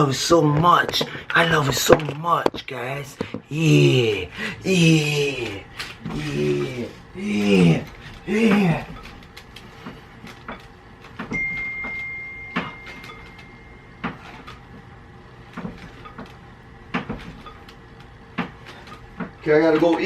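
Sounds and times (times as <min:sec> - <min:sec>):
faint steady high tone: 0:11.3 - 0:14.1.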